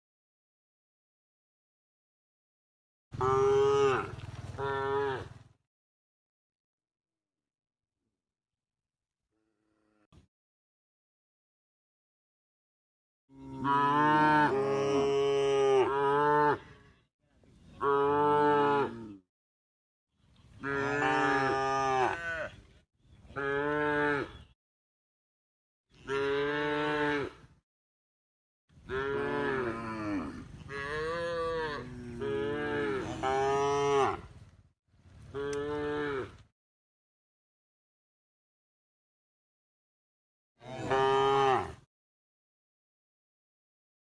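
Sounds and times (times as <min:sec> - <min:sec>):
cows mooing: 0:03.2 - 0:05.3, 0:13.3 - 0:16.7, 0:20.6 - 0:22.5, 0:28.9 - 0:34.3, 0:40.6 - 0:41.8.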